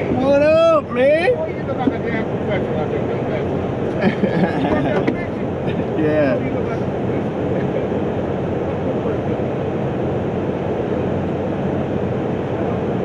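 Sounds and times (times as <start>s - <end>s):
boat motor running: 0.0s - 13.0s.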